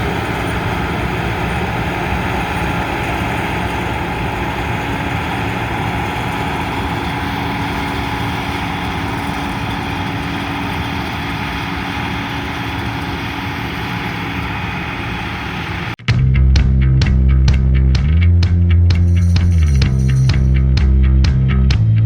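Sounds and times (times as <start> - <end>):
combine harvester droning: 0.0 - 16.0.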